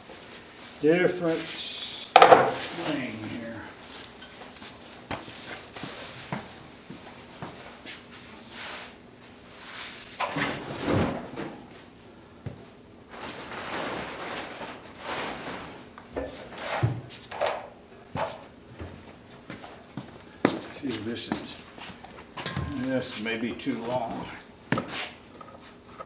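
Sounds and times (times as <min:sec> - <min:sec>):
tools and parts clattering: 0:22.4 - 0:23.6.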